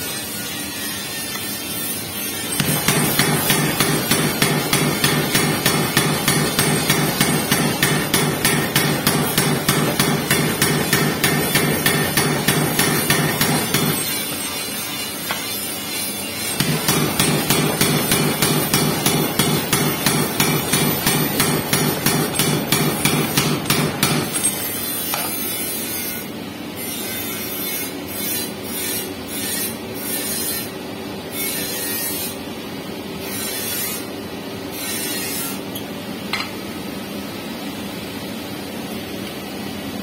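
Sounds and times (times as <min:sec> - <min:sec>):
steady machine noise: 0:01.7 - 0:24.9
power hammer striking metal: 0:02.4 - 0:14.3, 0:16.5 - 0:25.4.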